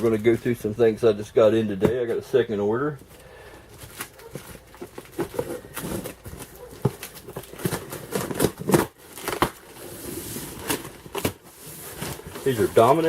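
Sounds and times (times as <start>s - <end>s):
cardboard packaging being handled: 3.6s - 13.0s.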